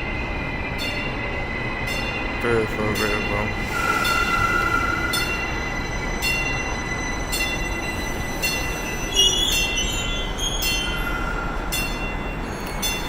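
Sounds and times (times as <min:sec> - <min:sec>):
steady high tone: 0:00.8 - 0:13.0
wheel or brake squeal: 0:03.0 - 0:13.0.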